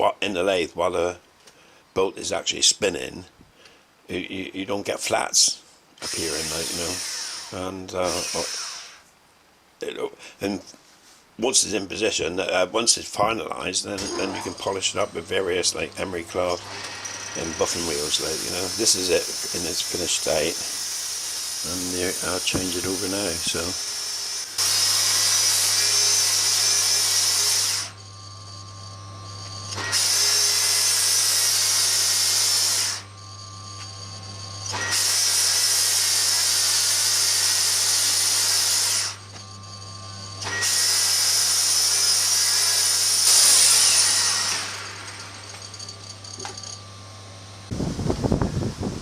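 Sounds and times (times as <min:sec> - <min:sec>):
power tool running: 0:06.0 - 0:09.1, 0:13.9 - 0:49.0.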